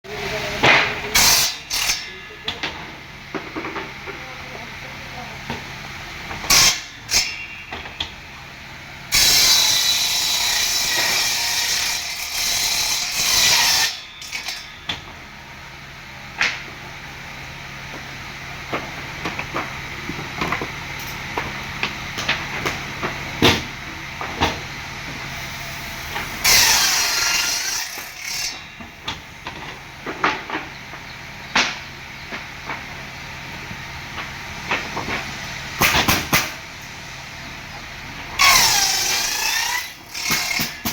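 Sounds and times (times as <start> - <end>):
steady low hum: 0.1 - 40.9
power tool cutting wood: 9.1 - 14.6, 25.4 - 28.7, 38.4 - 40.9.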